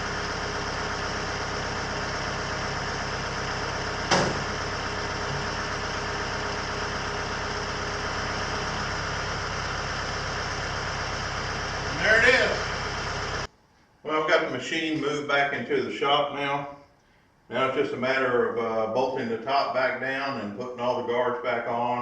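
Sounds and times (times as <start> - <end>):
engine idling: 0.0 - 13.5.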